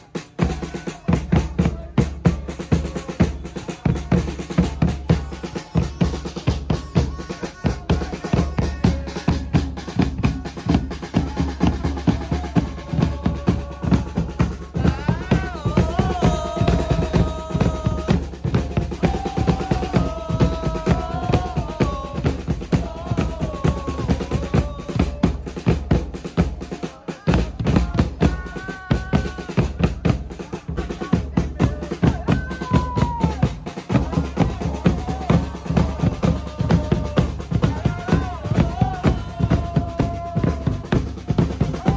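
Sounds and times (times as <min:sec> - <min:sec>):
drums beaten fast: 0:00.0 - 0:41.9.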